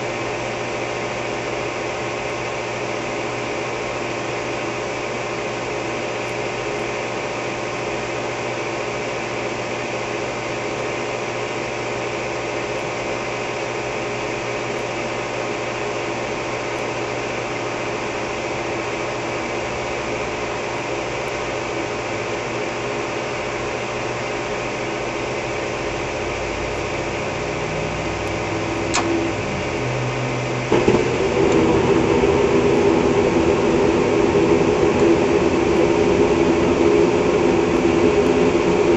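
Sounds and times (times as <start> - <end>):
furnace inducer motor hum: 0.0 - 38.9
gas burners roaring: 0.0 - 38.9
furnace ignition click: 28.2 - 29.4, 30.7 - 32.0.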